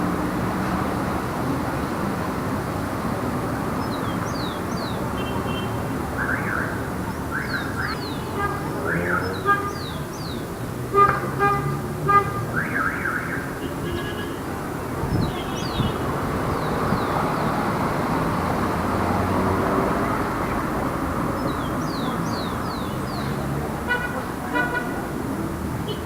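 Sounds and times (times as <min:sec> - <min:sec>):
passing car traffic: 0:00.0 - 0:26.0
car horn toots: 0:10.9 - 0:12.7.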